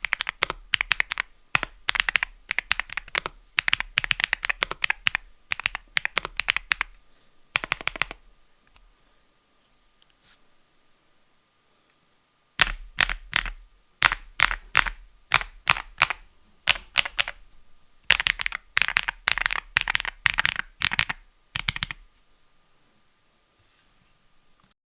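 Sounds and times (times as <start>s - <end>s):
mechanical keyboard typing: 0.0s - 7.0s, 7.6s - 8.2s, 12.6s - 17.4s, 18.1s - 22.0s.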